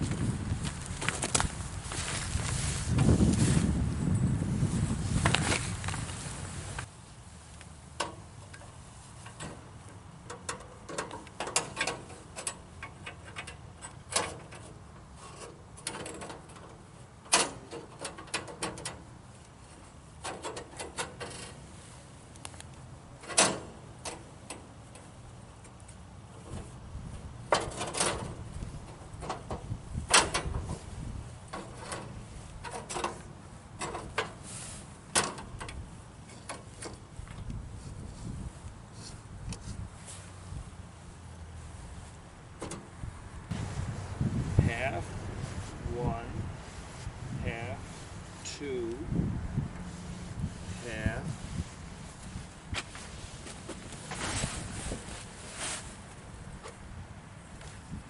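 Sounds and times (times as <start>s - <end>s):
metal being handled: 27.4s - 37.5s.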